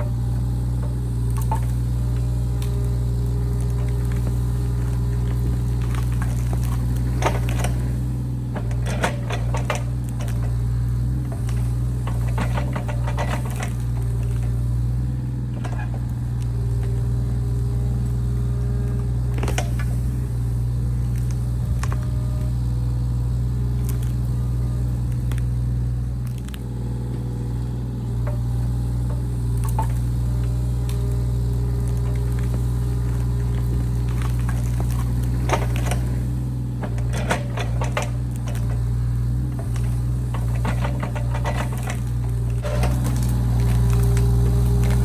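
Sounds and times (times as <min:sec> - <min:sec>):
excavator diesel engine running: 0:00.0 - 0:45.0
digging clicks and knocks: 0:03.5 - 0:14.7, 0:28.1 - 0:45.0.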